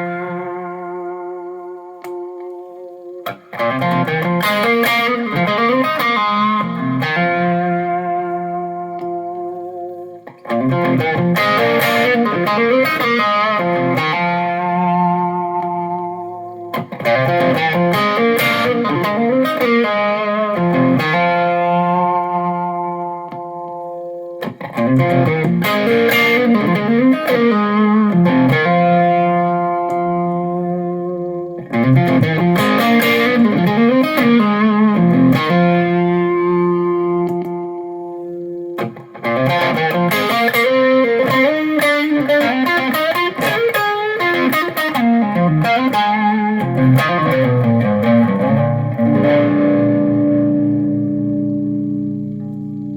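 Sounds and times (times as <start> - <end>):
overdriven electric guitar: 0.0 - 52.9.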